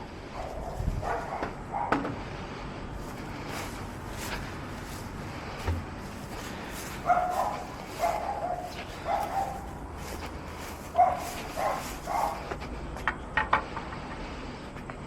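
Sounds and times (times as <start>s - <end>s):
dog barking: 0.3s - 2.0s, 7.0s - 10.2s, 10.8s - 12.6s.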